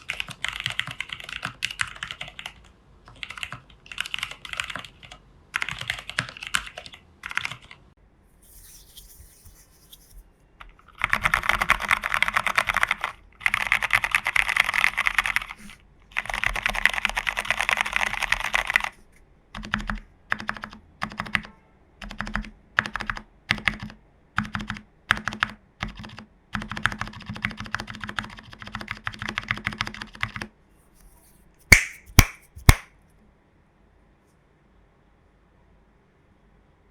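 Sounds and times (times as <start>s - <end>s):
mechanical keyboard typing: 0.0s - 7.8s, 10.9s - 19.0s, 19.6s - 30.5s.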